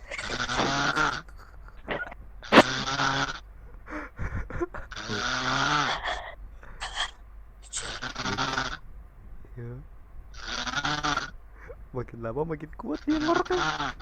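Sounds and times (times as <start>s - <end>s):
person snoring loudly: 0.0s - 1.2s, 1.9s - 3.4s, 4.9s - 6.3s, 7.7s - 8.8s
soft snorts: 0.0s - 1.2s, 1.8s - 3.3s, 5.0s - 7.1s.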